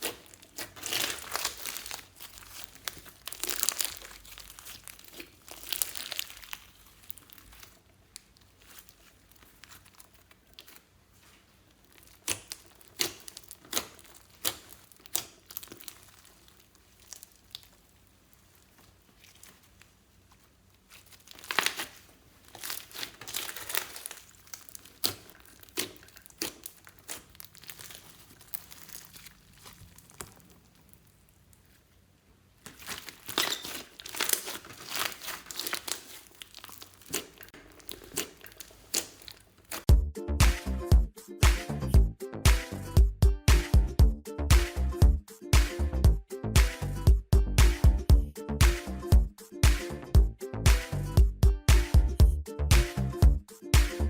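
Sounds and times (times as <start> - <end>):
slime squished by hand: 0.0 - 40.8.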